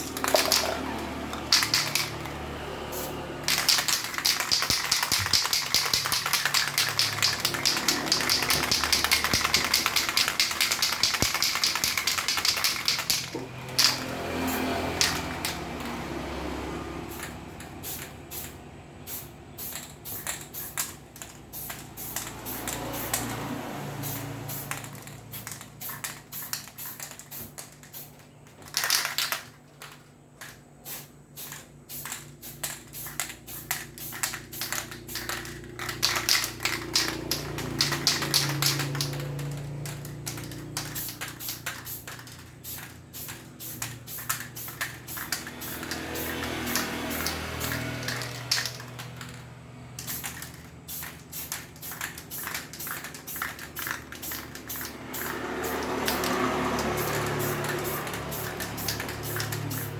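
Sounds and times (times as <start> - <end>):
spray paint can spraying: 0.0 - 16.0, 17.1 - 59.9.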